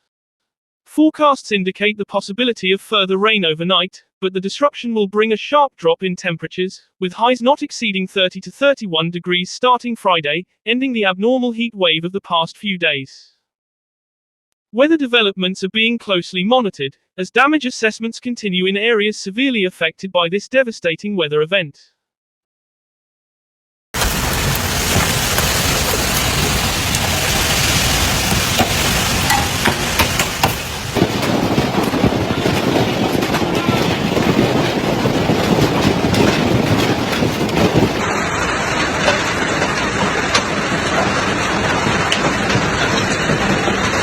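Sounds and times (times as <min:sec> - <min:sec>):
hail and rain hammering down: 0:24.0 - 0:44.0.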